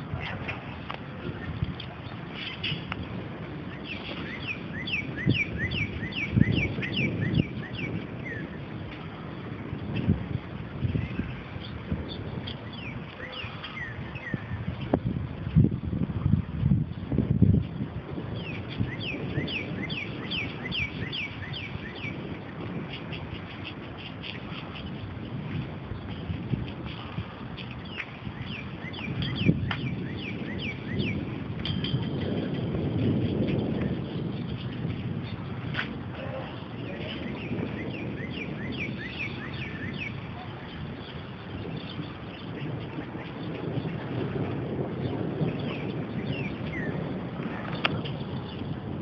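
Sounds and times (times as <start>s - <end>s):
low outdoor rumbling: 0.0s - 49.0s
songbird whistling: 3.8s - 8.5s, 12.6s - 14.5s, 18.4s - 22.2s, 27.8s - 31.3s, 37.2s - 40.3s.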